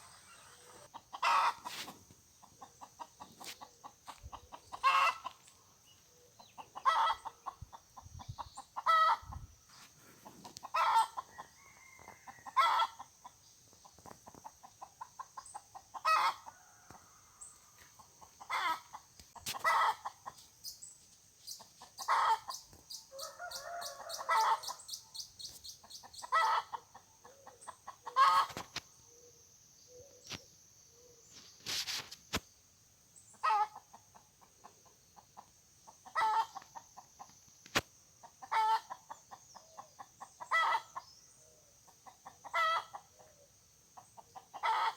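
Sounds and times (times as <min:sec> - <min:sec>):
high-pitched hiss: 0:00.0 - 0:00.9, 0:28.6 - 0:33.3
chickens clucking: 0:00.0 - 0:20.8, 0:21.5 - 0:28.9, 0:33.3 - 0:37.5, 0:38.2 - 0:41.1, 0:41.8 - 0:44.9.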